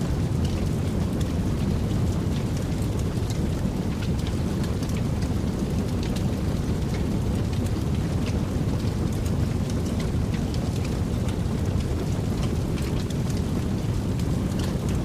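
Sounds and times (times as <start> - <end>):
fire crackling and rumbling: 0.0 - 15.0.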